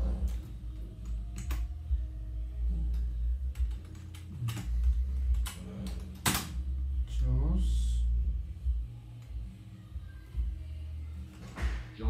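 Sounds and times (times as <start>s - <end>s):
steady low hum: 0.0s - 12.0s
keyboard keys tapping: 0.2s - 1.8s, 2.9s - 6.5s.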